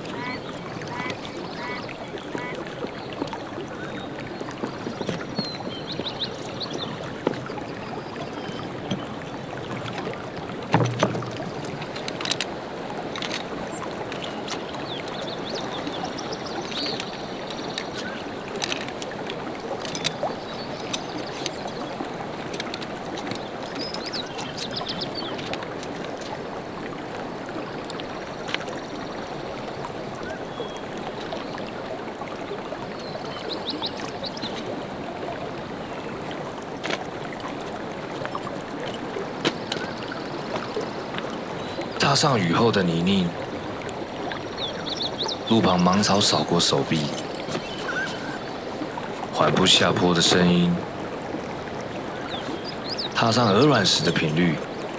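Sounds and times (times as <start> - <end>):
stream water rushing over rocks: 0.0 - 54.9
dull thump: 10.7 - 11.6.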